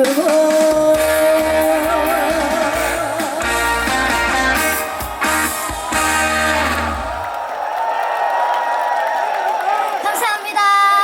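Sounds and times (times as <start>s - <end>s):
woman singing with vibrato: 0.0s - 4.6s
trot band with guitar and bass: 0.4s - 7.3s.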